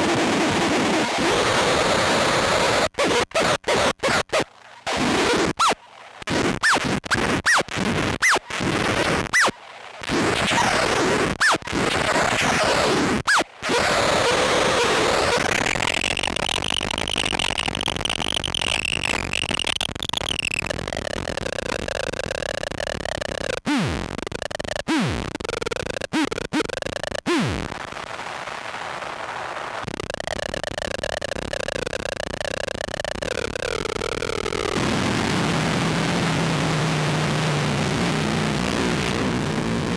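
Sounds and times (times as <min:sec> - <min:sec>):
sputtering feedback drone: 0:03.0 - 0:22.3.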